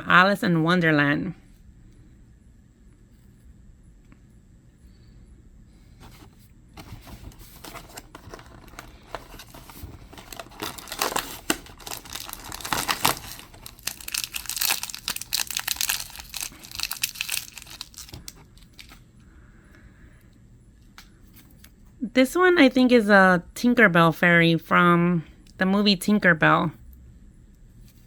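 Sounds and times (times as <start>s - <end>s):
plastic bag rustling and ripping: 7.0s - 19.0s.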